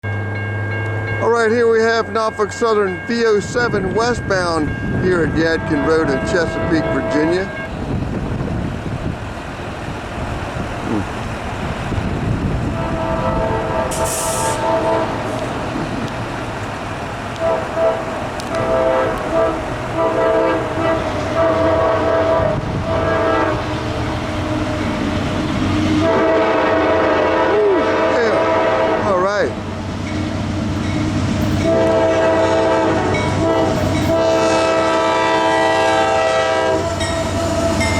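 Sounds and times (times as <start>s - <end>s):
passing train rumble: 0.0s - 37.9s
locomotive air horn blasts: 5.4s - 7.6s, 12.6s - 15.4s, 17.4s - 23.7s, 25.9s - 29.2s, 31.5s - 37.9s.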